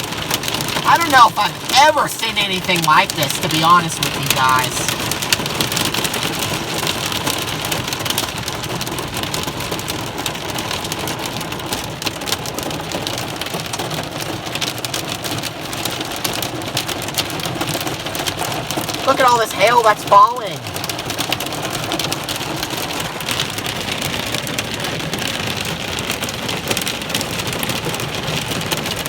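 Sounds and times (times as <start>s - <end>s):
hailstones ticking: 0.0s - 29.0s
heavy rain hiss: 0.5s - 5.4s, 18.8s - 20.9s.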